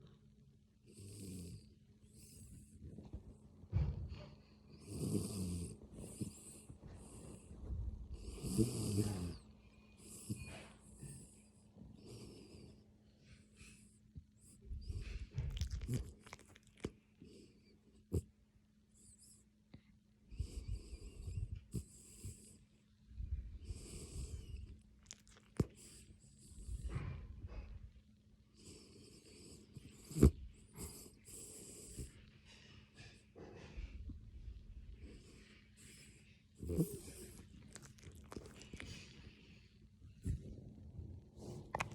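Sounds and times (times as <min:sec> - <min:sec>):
snoring with low rattle: 0:00.9 - 0:02.6, 0:04.7 - 0:09.4, 0:14.9 - 0:17.4, 0:23.6 - 0:27.4, 0:28.6 - 0:32.2, 0:35.1 - 0:39.2
loud buzzing snores: 0:04.9 - 0:05.8, 0:08.4 - 0:09.4.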